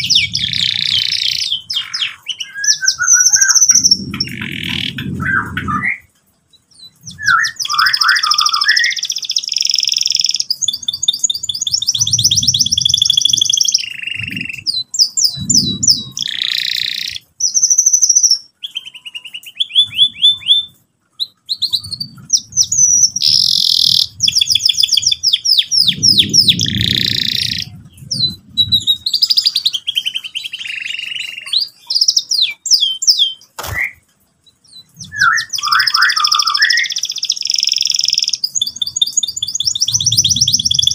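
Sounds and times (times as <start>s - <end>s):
low rumble: 0.0s - 1.7s, 3.0s - 7.5s, 11.6s - 13.3s, 14.1s - 16.2s, 24.1s - 29.9s
canary singing trills: 0.0s - 40.9s
sharp click: 33.6s - 34.0s.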